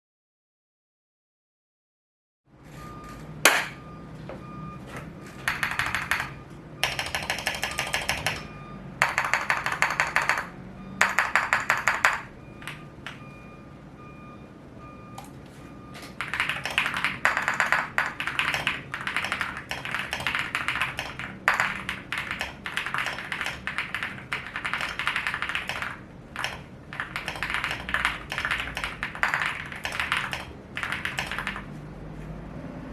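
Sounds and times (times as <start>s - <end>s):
mechanical keyboard typing: 5.3s - 13.2s, 16.1s - 31.8s.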